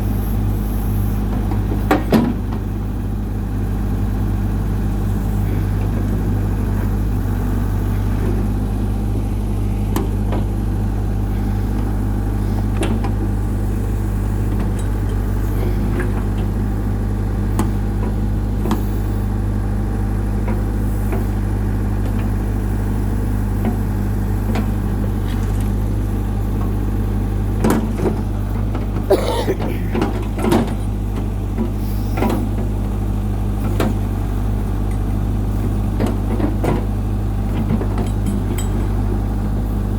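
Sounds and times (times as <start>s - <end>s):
diesel engine idling: 2.6s - 28.7s.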